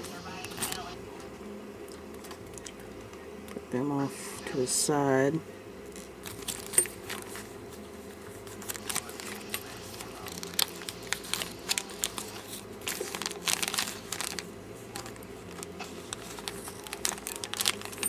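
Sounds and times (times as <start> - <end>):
plastic packaging crinkling: 5.9 - 7.6, 8.2 - 18.0
small crackles and clicks: 8.5 - 18.0.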